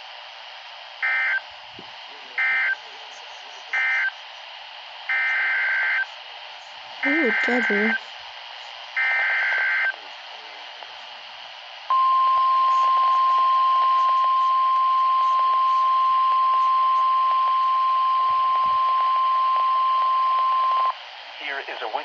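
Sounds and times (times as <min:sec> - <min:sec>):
radio hiss: 0:01.7 - 0:22.0
steady warning alert tone: 0:07.1 - 0:08.0.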